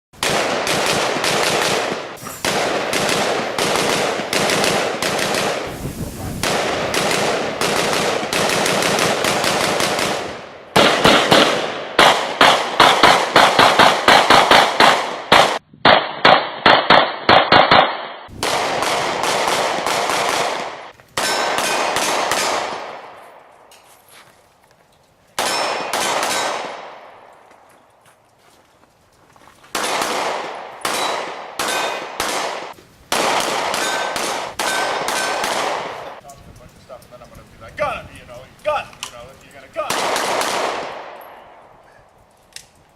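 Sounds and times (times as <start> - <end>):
rapid semi-automatic gunfire: 0.2 - 5.7, 6.4 - 23.1, 25.4 - 27.0, 29.7 - 36.2, 39.8 - 41.2.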